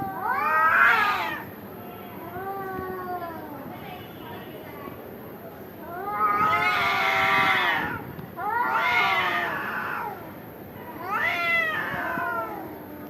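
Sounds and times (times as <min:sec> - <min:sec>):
cats yowling: 0:00.0 - 0:01.5, 0:05.9 - 0:10.3, 0:11.0 - 0:13.0.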